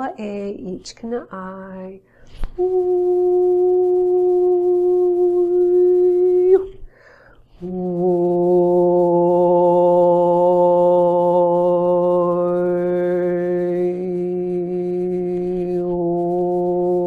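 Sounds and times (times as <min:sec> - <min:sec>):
breath: 0:02.0 - 0:02.5, 0:06.8 - 0:07.6.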